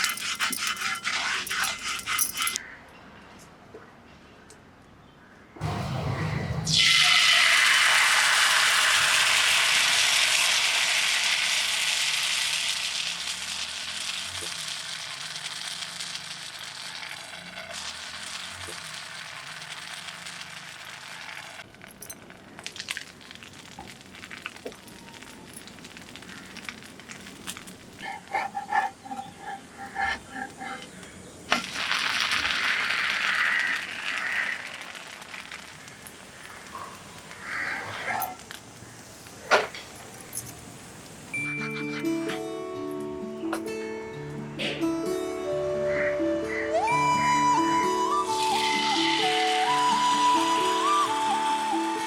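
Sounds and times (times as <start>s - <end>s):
food sizzling in a pan: 6.7s - 21.7s, 31.5s - 36.7s, 47.9s - 52.0s
light metallic clinks: 39.8s - 41.7s.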